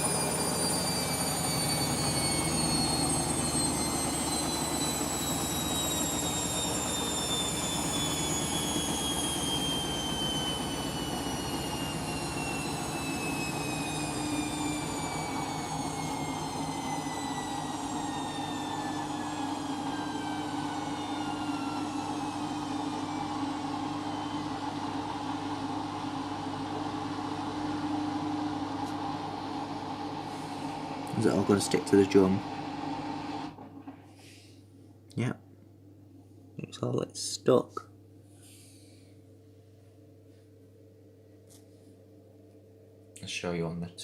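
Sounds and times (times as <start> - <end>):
washing machine motor whine: 0.0 - 35.0.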